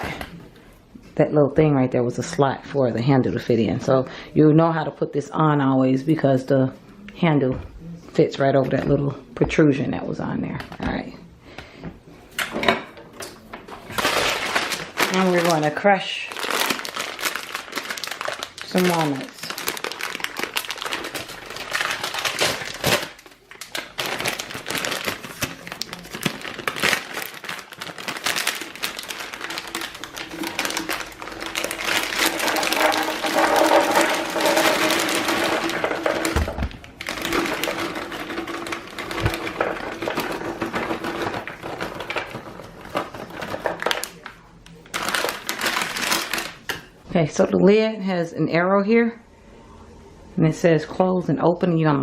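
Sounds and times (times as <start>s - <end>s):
nuts rattling into blender jar: 26.2s - 44.1s.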